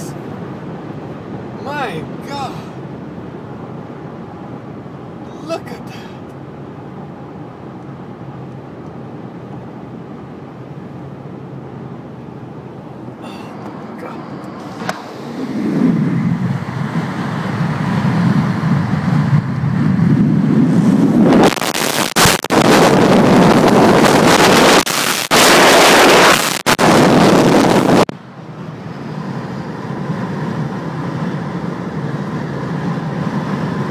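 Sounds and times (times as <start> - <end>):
wind buffeting microphone: 12.2 - 33.9.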